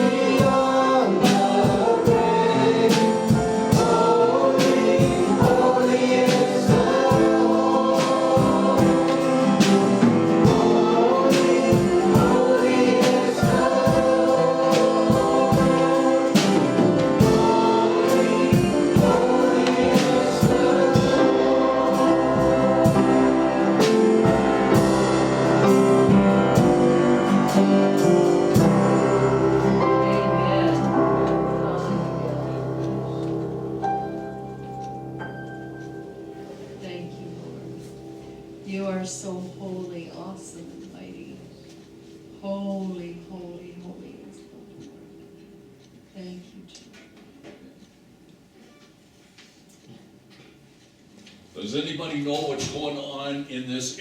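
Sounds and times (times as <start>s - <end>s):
group singing gospel song: 0.0s - 33.8s
band accompaniment: 0.0s - 42.8s.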